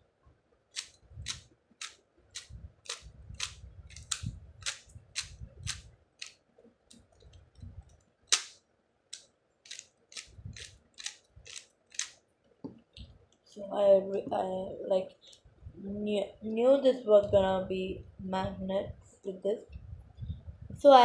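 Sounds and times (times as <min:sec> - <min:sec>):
puzzle cube plastic clicks: 0:00.7 - 0:07.6, 0:08.3 - 0:12.2.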